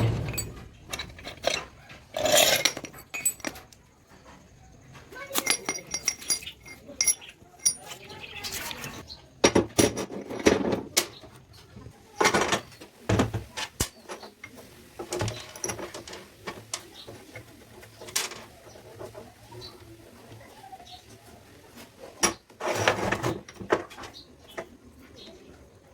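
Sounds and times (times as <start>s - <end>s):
metal tools clinking and scraping: 0.0s - 11.2s, 12.1s - 12.8s, 13.6s - 19.3s, 22.2s - 24.2s.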